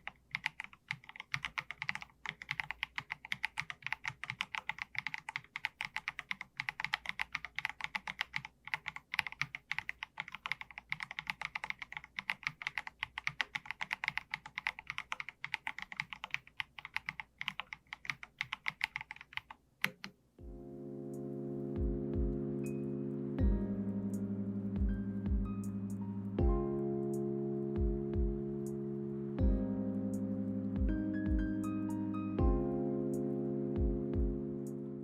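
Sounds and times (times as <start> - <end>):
fast mechanical keyboard typing: 0.0 - 20.1.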